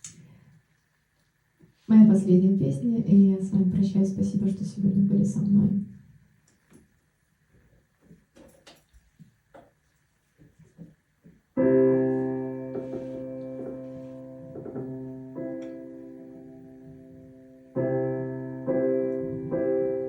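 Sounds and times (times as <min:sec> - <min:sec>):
piano chords: 0:11.6 - 0:20.0.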